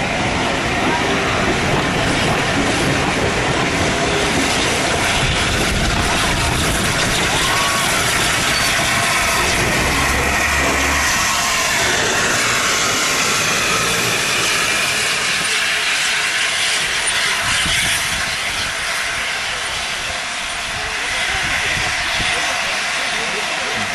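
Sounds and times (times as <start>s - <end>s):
rail noise: 0.0s - 23.9s
steam locomotive rumbling: 0.0s - 23.9s
steam hissing: 1.3s - 23.9s.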